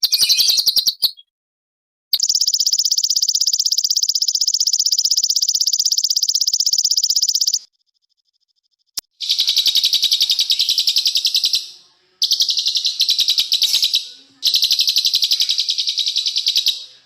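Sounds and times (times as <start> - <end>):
songbird singing rapid trills: 0.0 - 1.2, 9.2 - 17.0.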